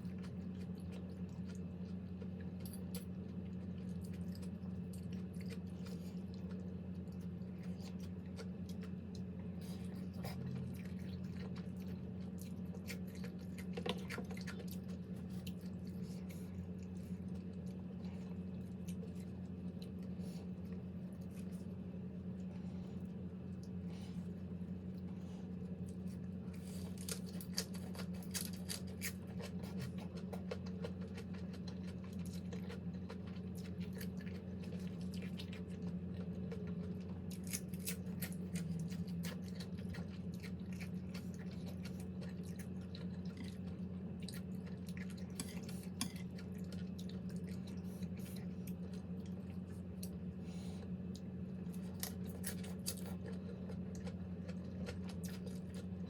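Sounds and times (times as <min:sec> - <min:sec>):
person chewing food: 0:00.0 - 0:56.0
steady low hum: 0:00.0 - 0:56.0
small wet clicks and crunches: 0:25.0 - 0:50.3.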